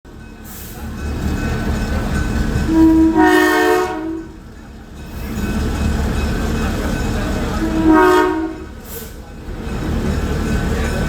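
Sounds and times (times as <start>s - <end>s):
low rumble of train: 0.1s - 11.0s
locomotive air horn blast: 2.7s - 4.4s, 7.6s - 9.2s.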